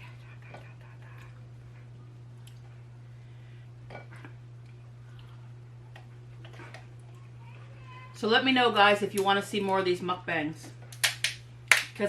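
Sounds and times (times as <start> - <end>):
wet chewing sounds: 4.2 - 7.2.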